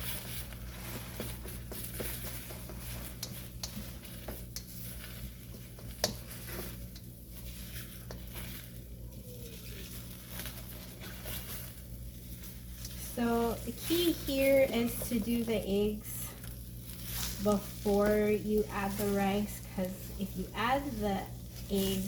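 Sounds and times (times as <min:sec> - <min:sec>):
utensil scraping and tapping a pan: 0:00.0 - 0:08.8
eggs sizzling: 0:00.0 - 0:22.0
steady low hum: 0:00.0 - 0:22.0.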